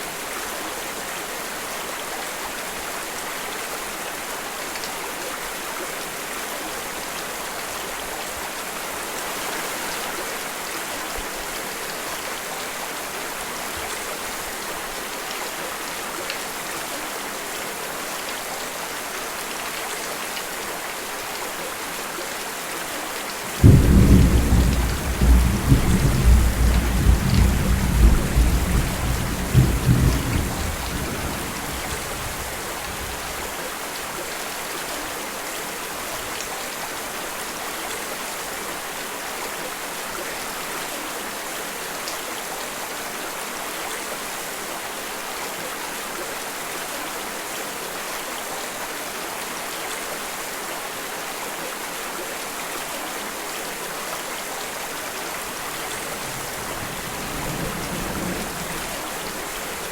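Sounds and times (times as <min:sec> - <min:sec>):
steady rain: 0:00.0 - 0:59.9
thunder rolling: 0:23.6 - 0:33.5, 0:56.0 - 0:59.9.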